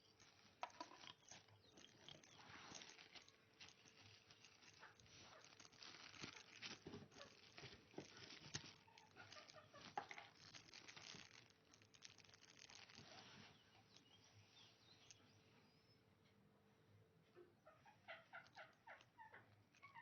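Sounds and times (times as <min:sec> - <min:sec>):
small clicks and knocks: 0:00.0 - 0:14.1
packaging rustling and crinkling: 0:00.0 - 0:15.2.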